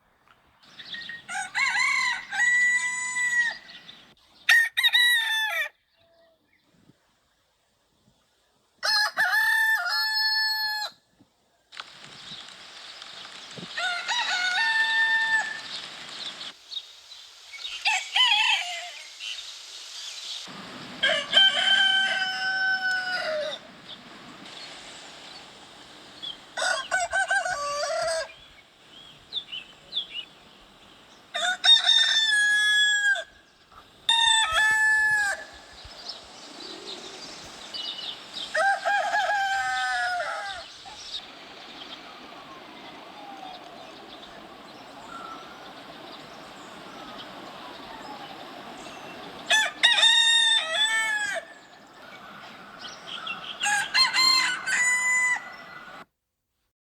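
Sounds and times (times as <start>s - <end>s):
rooster crowing: 1.2s - 3.8s, 4.5s - 5.7s, 8.8s - 11.0s, 13.7s - 15.8s, 17.8s - 19.1s, 20.5s - 23.7s, 26.2s - 28.4s, 31.3s - 33.4s, 34.1s - 35.8s, 37.0s - 40.8s, 49.4s - 52.0s, 53.2s - 56.0s.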